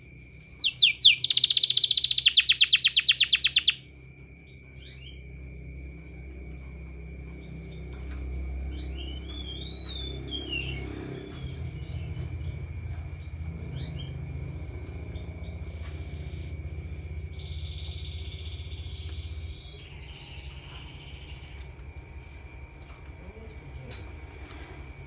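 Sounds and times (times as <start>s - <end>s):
low hum: 0.0s - 25.0s
canary singing: 0.3s - 5.2s, 7.4s - 21.8s.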